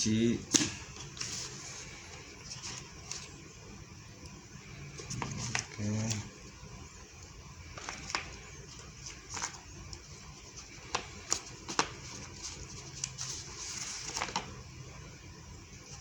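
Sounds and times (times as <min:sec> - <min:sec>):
cardboard and plastic rustling: 0:00.5 - 0:03.4, 0:04.9 - 0:06.3, 0:07.7 - 0:14.6.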